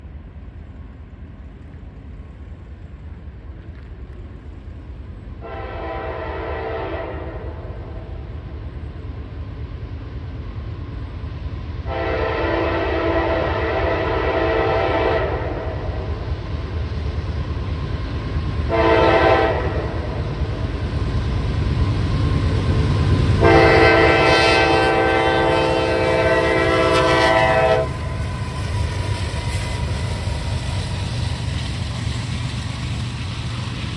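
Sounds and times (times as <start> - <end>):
low rumble of train: 0.0 - 33.9
locomotive air horn blasts: 5.4 - 7.6, 11.9 - 15.7, 18.7 - 20.0, 23.4 - 28.2.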